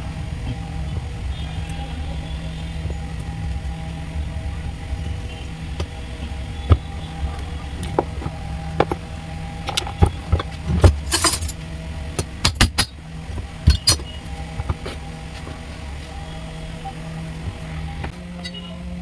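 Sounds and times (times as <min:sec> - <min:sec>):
steady low hum: 0:00.0 - 0:19.0
metal tools clinking on car parts: 0:09.6 - 0:11.6.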